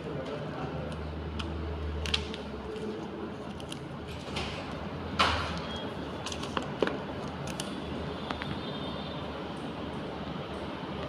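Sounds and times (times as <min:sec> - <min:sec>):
packaging clicks and taps: 0:00.8 - 0:04.5, 0:06.2 - 0:07.7.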